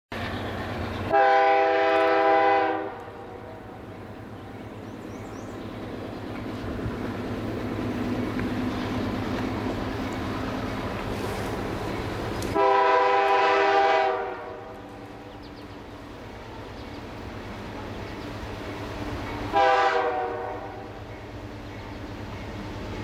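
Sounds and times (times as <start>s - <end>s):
diesel train rumble: 0.1s - 23.0s
locomotive air horn chord: 1.1s - 3.5s, 12.5s - 14.8s, 19.5s - 21.0s.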